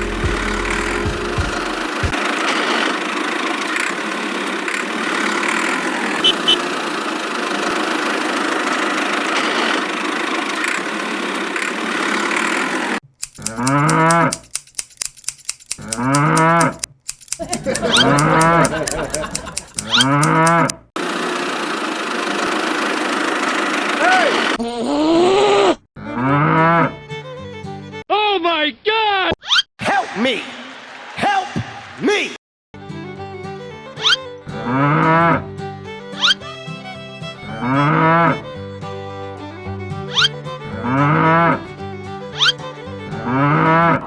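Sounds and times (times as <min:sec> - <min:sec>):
small engine running: 0:00.0 - 0:13.0, 0:21.0 - 0:24.6, 0:35.9 - 0:40.6
cow mooing: 0:43.3 - 0:44.0.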